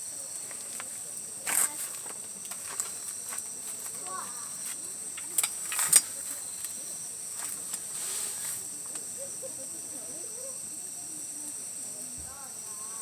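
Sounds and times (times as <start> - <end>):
insects chirping: 0.0 - 13.0
rustle: 0.2 - 9.1
faint clicks: 0.3 - 6.8.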